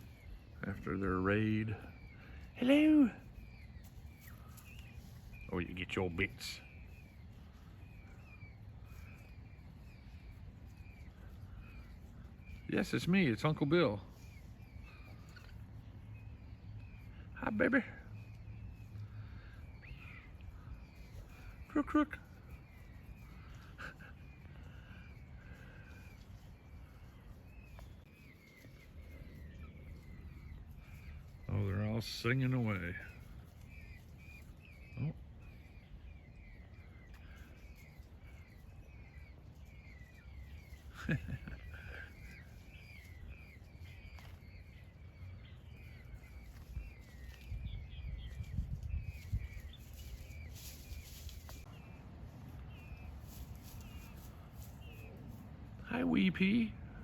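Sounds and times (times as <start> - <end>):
birds chirping: 0.0 - 57.0
chicks peeping: 0.0 - 57.0
low background rumble: 14.0 - 32.3.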